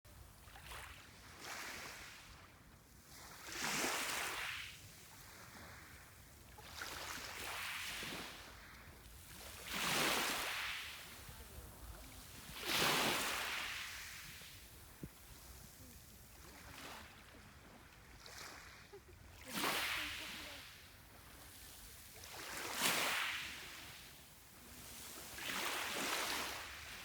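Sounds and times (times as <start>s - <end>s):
sea waves washing onto shore: 6.8s - 27.0s.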